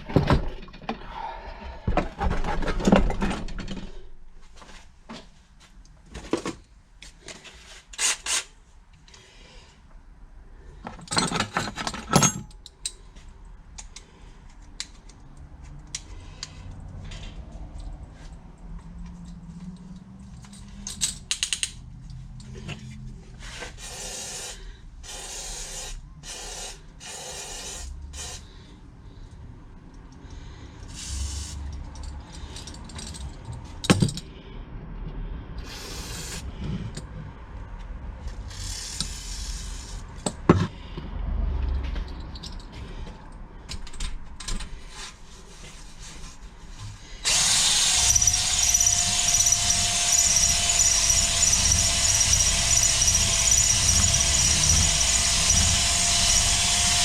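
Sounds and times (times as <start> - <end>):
short hissing bursts: 35.6 - 36.4
electric drill running: 47.2 - 57.0.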